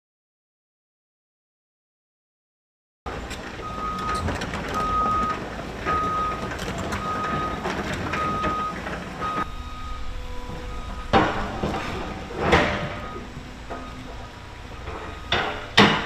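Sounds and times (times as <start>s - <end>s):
engine running: 3.1s - 16.0s
metallic clanks of demolition: 3.1s - 16.0s
backup alarm beeping: 3.6s - 16.0s.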